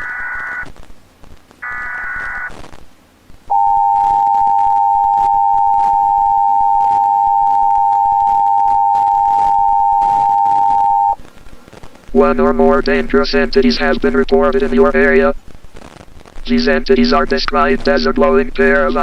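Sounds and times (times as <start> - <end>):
steady two-tone alarm: 3.5 - 11.2.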